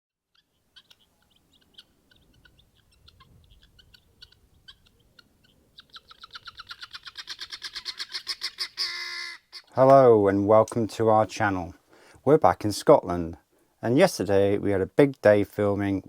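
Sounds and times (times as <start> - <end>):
repeated bird calls: 0.2 - 9.9
birds chirping: 0.2 - 10.4.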